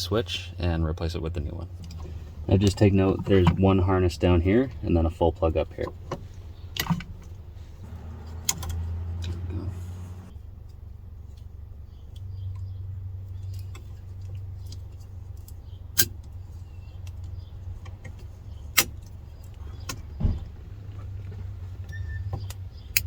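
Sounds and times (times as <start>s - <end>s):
handling ticks and rattles: 1.7s - 23.0s
steady low hum: 7.4s - 19.8s.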